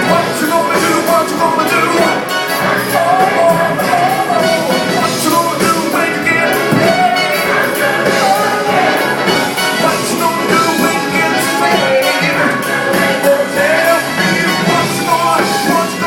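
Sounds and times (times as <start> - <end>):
brass horns playing: 0.0 - 16.0.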